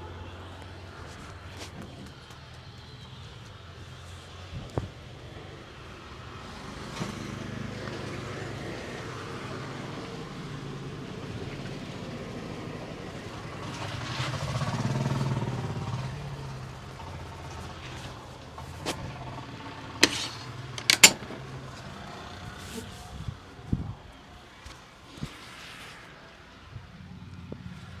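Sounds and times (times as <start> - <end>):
sharp click: 20.0 - 21.3.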